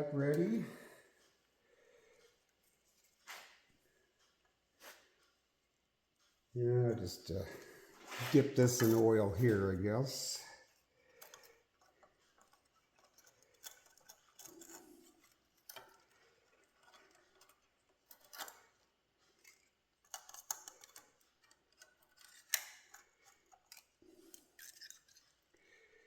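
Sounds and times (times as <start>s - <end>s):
small metal parts clicking: 11.2s - 25.6s.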